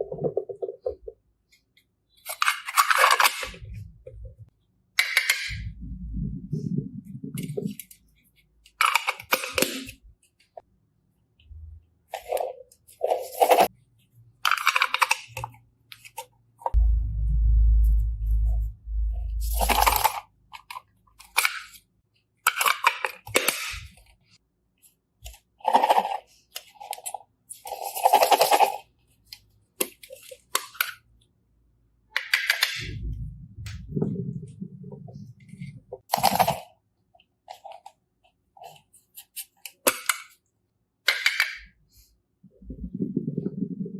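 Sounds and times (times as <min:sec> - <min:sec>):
low rumble: 0:05.6 - 0:07.3, 0:16.8 - 0:19.6, 0:32.8 - 0:35.4.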